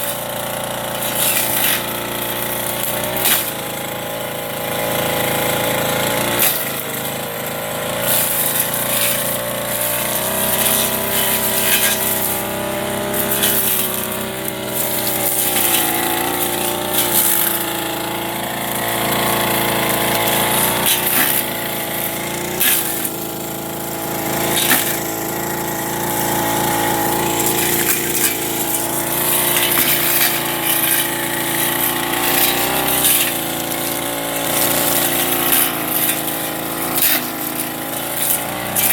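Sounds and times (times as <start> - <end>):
brush cutter engine running: 0.0 - 38.9
blade striking fronds: 8.1 - 23.2, 24.0 - 38.9.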